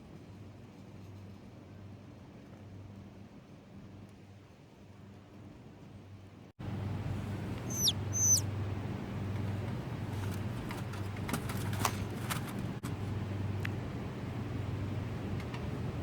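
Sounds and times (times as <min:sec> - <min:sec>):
steady low hum: 0:00.0 - 0:16.0
bird whistled calls: 0:07.6 - 0:08.5.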